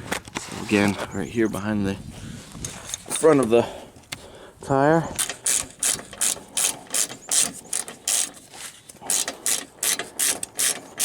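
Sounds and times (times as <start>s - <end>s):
socket ratchet clicking: 5.2s - 11.0s.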